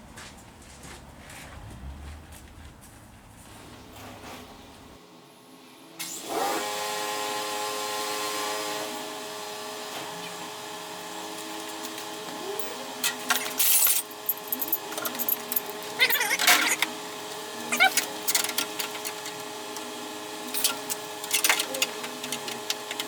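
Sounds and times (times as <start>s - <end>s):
generator engine running: 6.2s - 23.0s.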